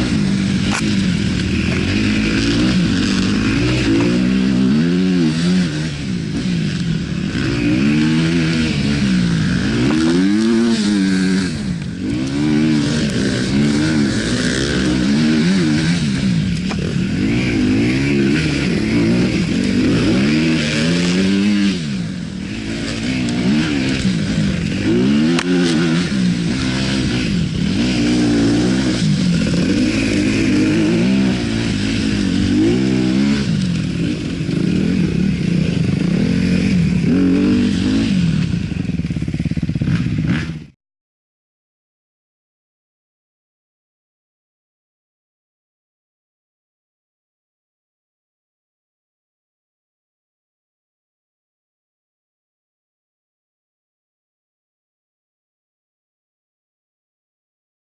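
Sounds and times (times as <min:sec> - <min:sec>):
motorcycle engine revving: 0:00.0 - 0:40.8.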